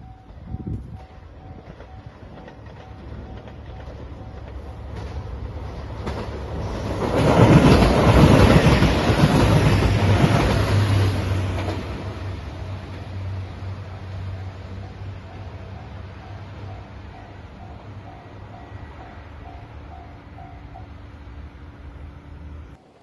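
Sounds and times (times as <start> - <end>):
level crossing warning bell: 0.0 - 4.9, 13.9 - 21.3
train wheels rumbling on rails: 0.0 - 22.9.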